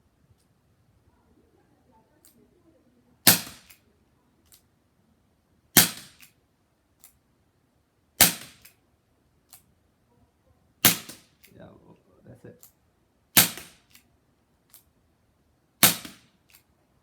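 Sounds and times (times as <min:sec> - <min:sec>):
faint clicks: 0:02.2 - 0:02.4, 0:04.4 - 0:04.7
air revolver shots cracking: 0:03.3 - 0:03.8, 0:05.8 - 0:06.3, 0:08.2 - 0:08.7, 0:10.8 - 0:11.5, 0:13.4 - 0:14.0, 0:15.8 - 0:16.3.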